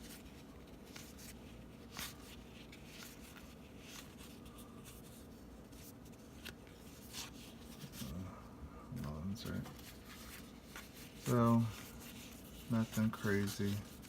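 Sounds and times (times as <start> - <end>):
trading cards flipped by hand: 0.1 - 5.0, 5.7 - 8.0.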